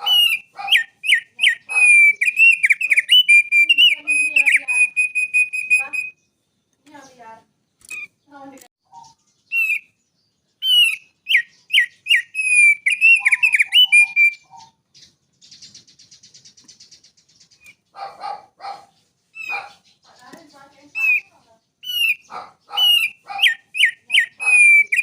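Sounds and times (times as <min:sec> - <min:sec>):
songbird dry trill: 0:00.0 - 0:25.0
songbird singing: 0:00.0 - 0:25.0.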